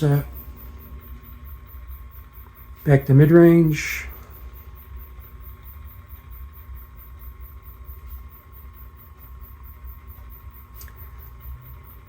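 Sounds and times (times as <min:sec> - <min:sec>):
thin high tone: 0:00.0 - 0:09.4
low electrical hum: 0:00.0 - 0:12.0.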